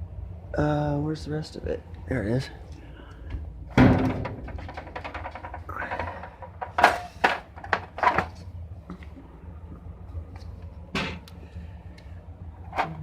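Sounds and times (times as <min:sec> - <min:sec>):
steady low hum: 0:00.0 - 0:13.0
hardware knocking and clattering: 0:03.7 - 0:08.4.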